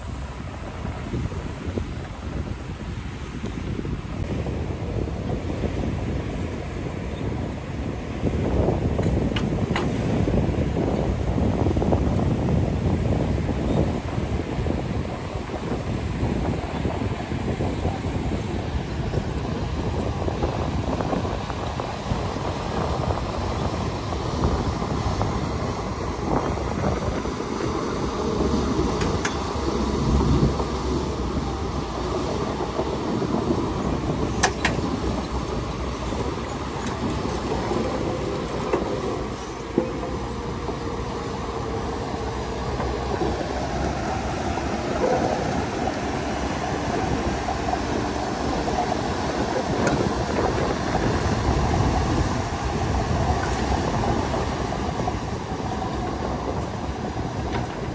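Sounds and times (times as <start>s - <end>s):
steel tracks clattering: 8.5s - 57.9s
bulldozer diesel engine: 12.5s - 57.9s.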